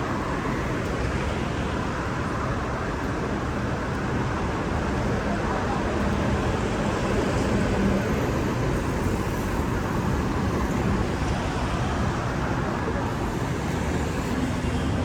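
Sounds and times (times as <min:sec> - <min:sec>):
road traffic rumble: 0:05.4 - 0:15.0.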